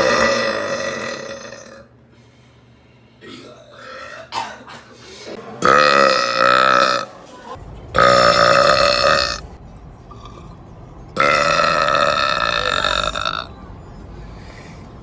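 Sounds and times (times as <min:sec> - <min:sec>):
person burping loudly: 0:00.0 - 0:01.9, 0:05.6 - 0:07.1, 0:08.0 - 0:09.4, 0:11.2 - 0:13.5.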